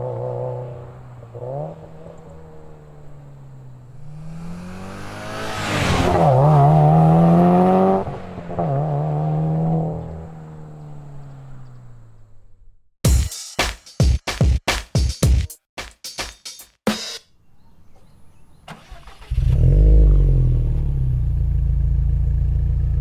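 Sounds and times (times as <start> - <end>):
car exhaust revving: 0.0 - 11.6
music with drum beat: 13.0 - 17.2.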